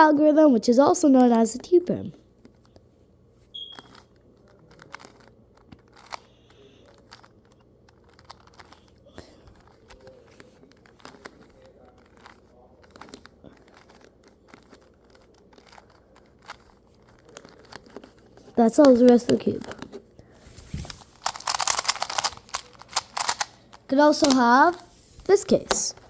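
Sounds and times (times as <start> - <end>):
plastic puzzle cube clicking: 3.6 - 20.0, 20.6 - 26.0.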